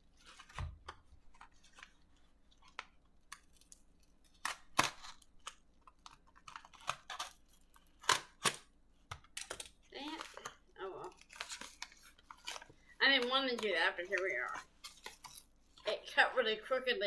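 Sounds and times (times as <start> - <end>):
plastic crackling: 0.1 - 16.2
scissors snipping plastic: 2.6 - 15.9.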